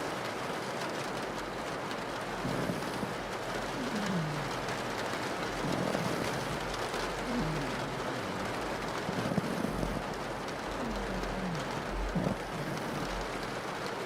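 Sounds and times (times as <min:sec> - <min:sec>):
rain pattering on a window: 0:00.0 - 0:14.0
dog snoring: 0:02.4 - 0:14.0.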